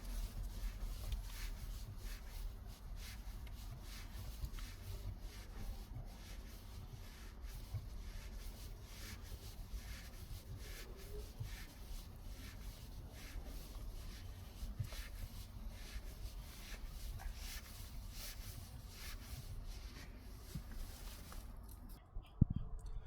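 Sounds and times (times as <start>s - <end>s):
hands rubbing and scraping knob: 0.0s - 21.9s.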